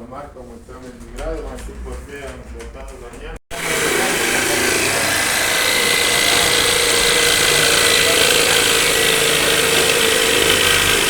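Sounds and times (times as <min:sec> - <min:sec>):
power tool motor whining: 0:03.5 - 0:11.0.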